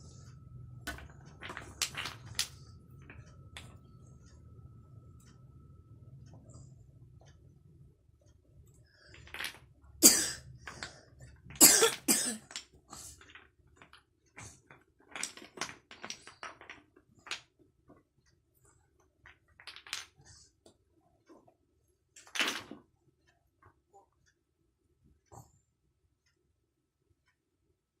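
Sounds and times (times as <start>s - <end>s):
wooden toy blocks clicking: 0.8s - 3.9s, 10.6s - 17.6s, 19.2s - 20.3s, 22.2s - 22.9s
child coughing: 10.0s - 10.4s, 11.6s - 12.5s.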